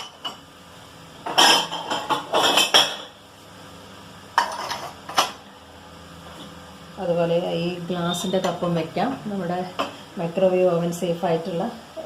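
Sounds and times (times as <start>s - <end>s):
ceramic cups clinking: 1.3s - 3.1s.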